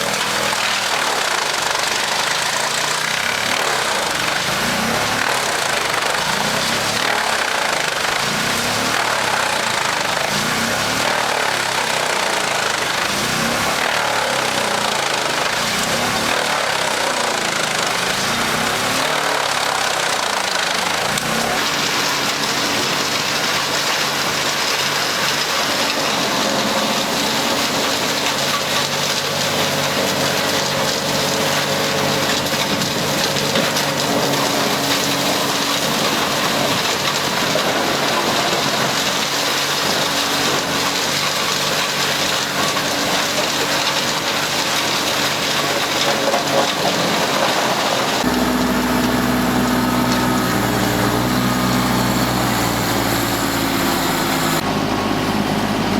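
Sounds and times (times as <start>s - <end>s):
wood chipper running: 0.0s - 55.9s
low engine hum: 48.1s - 55.9s.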